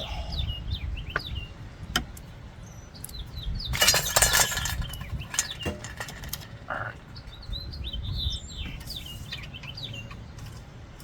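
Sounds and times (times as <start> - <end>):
birds chirping: 0.0 - 11.0
hard objects clattering: 3.8 - 7.1.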